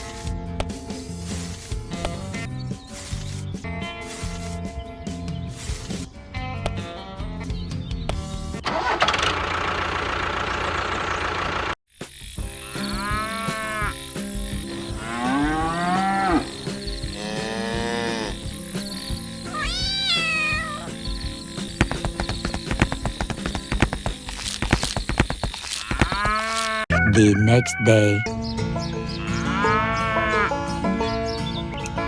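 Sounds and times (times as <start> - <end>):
drawn-out animal calls: 8.7 - 11.8, 12.5 - 28.4, 29.1 - 30.7.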